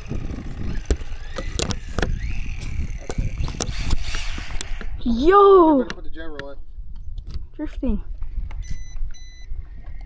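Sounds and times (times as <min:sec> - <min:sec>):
faint electric motor whine: 0:00.0 - 0:05.2
wind rumble on microphone: 0:00.0 - 0:10.0.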